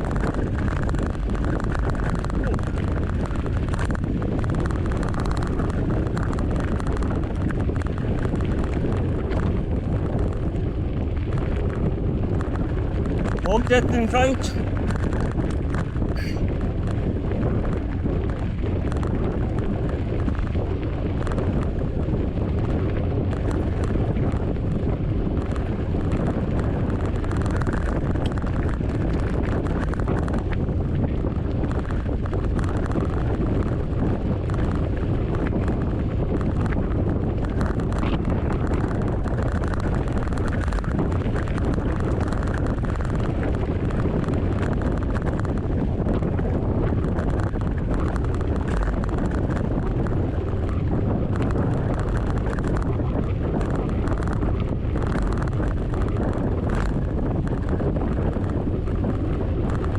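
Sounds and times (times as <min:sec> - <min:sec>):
wind buffeting microphone: 0:30.4 - 0:59.9.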